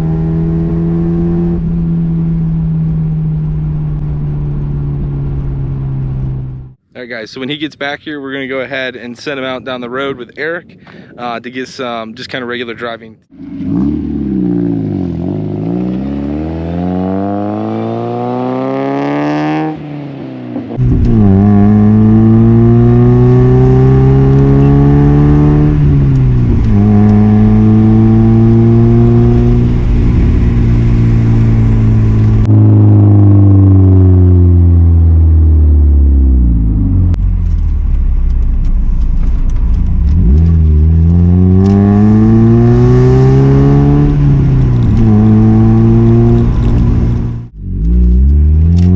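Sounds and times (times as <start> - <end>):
car engine accelerating: 0.0 - 6.8, 13.3 - 48.9.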